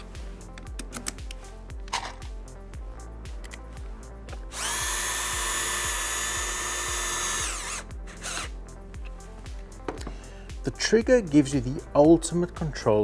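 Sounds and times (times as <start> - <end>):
music with steady beat: 0.0 - 13.0
cordless drill whining: 4.5 - 8.5.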